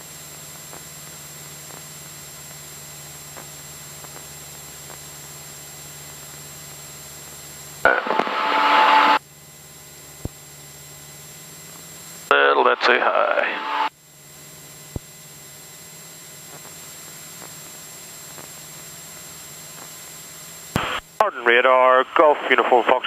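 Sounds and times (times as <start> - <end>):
radio hiss and hum: 0.0 - 9.2, 11.6 - 14.0, 16.2 - 23.0
radio noise burst: 7.9 - 9.2, 12.3 - 13.9, 20.8 - 23.0.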